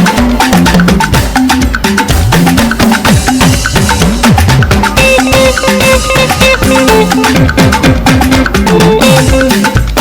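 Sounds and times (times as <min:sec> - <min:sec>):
upbeat music with drums: 0:00.0 - 0:10.0
sliding bass line: 0:02.4 - 0:09.6.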